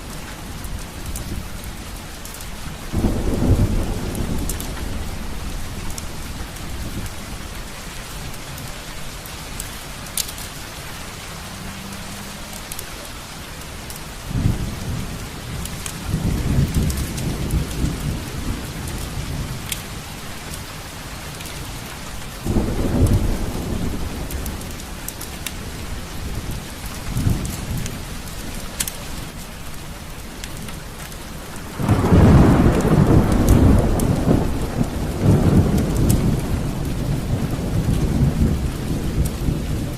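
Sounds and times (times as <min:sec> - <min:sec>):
heavy rain: 0:00.0 - 0:39.9
rolling thunder: 0:00.4 - 0:08.1, 0:13.8 - 0:20.6, 0:22.4 - 0:29.8, 0:31.4 - 0:39.9
sharp crackles: 0:03.5 - 0:39.9.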